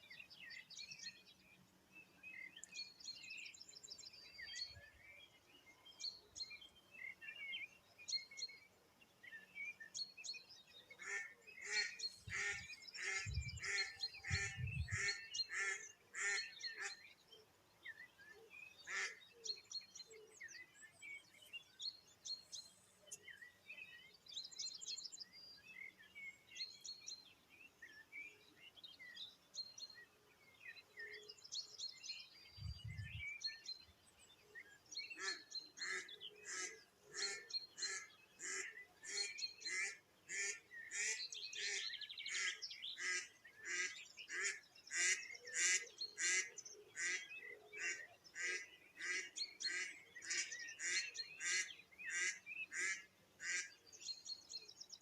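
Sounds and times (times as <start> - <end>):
small birds singing: 0.0 - 55.0
duck quacking: 11.0 - 16.9, 35.2 - 53.7.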